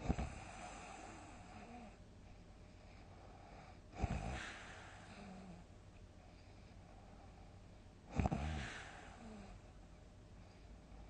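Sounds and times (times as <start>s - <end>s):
person snoring: 8.1s - 9.6s.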